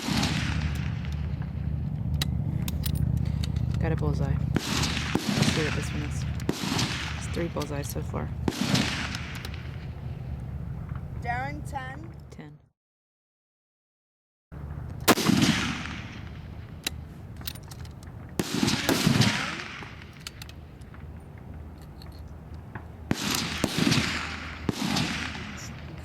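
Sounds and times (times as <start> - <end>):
distant gunshot cracks: 0.0 - 2.0, 4.5 - 7.8, 8.4 - 10.0, 15.0 - 17.0, 18.4 - 21.3, 22.7 - 26.0
rifle shots with echo: 0.0 - 3.1, 3.9 - 10.4, 15.0 - 17.1, 18.1 - 21.2, 22.7 - 26.0.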